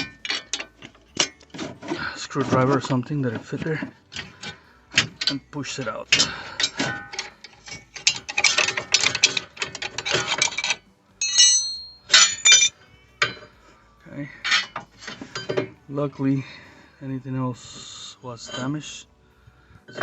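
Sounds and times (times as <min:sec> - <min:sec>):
metal scraping and clicking: 0:00.0 - 0:13.6, 0:14.4 - 0:15.8
ringing metal clinks: 0:06.1 - 0:13.5.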